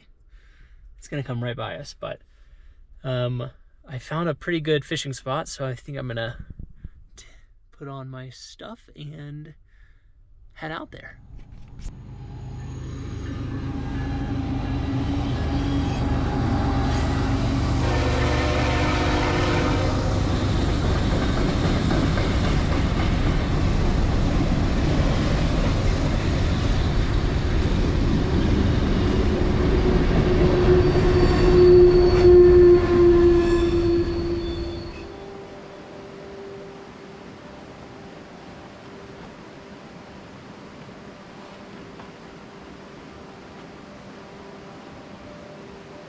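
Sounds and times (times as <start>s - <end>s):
train rumble passing: 11.2s - 46.0s
squeal-like tone: 11.4s - 17.5s, 30.4s - 35.4s
train horn: 12.2s - 20.6s, 30.2s - 37.2s.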